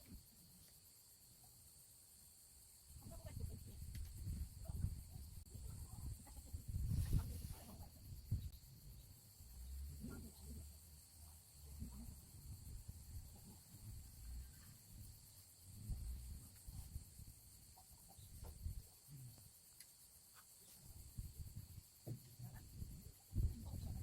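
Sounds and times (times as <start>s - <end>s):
insect chirring: 0.0s - 24.0s
soft low bumps and rustles: 3.0s - 19.5s, 20.3s - 24.0s
small ticks: 17.8s - 23.2s.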